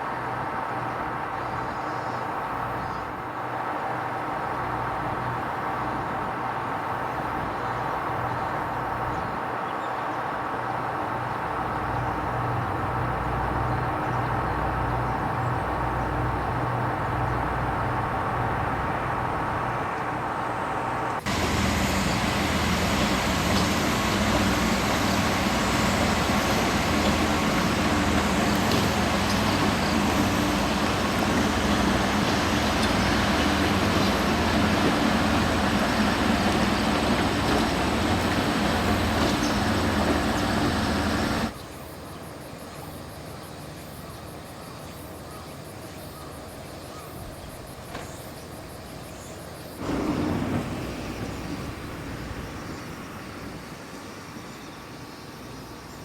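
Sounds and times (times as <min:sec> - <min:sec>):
mechanical drone of machinery: 0:11.8 - 0:41.6, 0:49.7 - 0:53.8.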